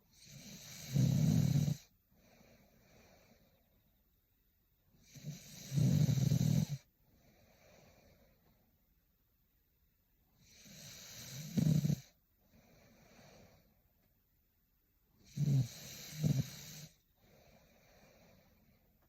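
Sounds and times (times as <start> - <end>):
woman snoring: 0.1 - 1.9, 5.0 - 6.9, 10.4 - 12.2, 15.2 - 17.0.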